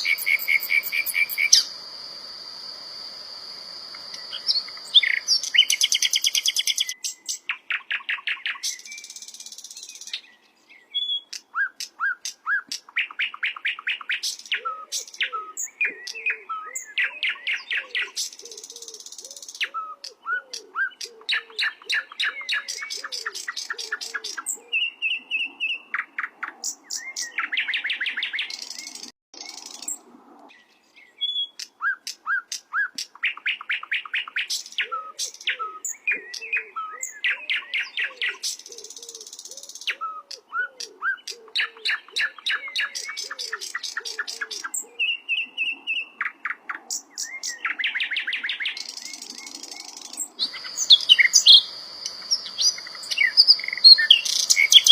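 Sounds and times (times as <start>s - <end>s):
songbird singing trills and chirps: 0.0s - 54.9s.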